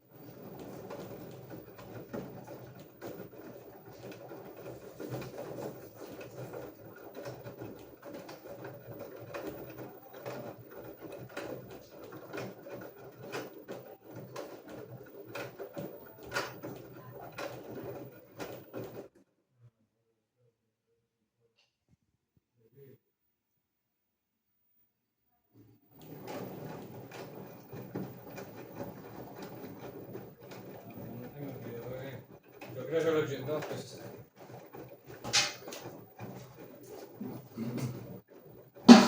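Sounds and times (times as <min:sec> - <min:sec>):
washing machine drum turning: 0:26.0 - 0:38.0, 0:38.7 - 0:39.0.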